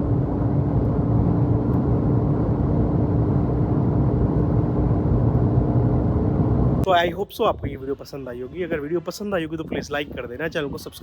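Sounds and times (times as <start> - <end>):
engine drone: 0.0 - 6.9
road and wind rush: 0.0 - 11.0.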